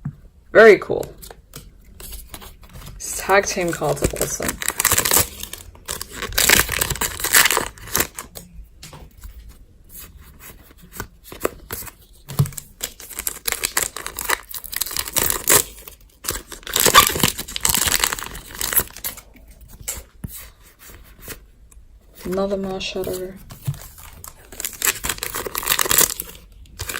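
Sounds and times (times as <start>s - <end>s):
cards being handled: 1.0s - 21.4s
foil wrapper tearing and crinkling: 2.0s - 8.4s, 10.9s - 21.4s, 22.2s - 26.9s.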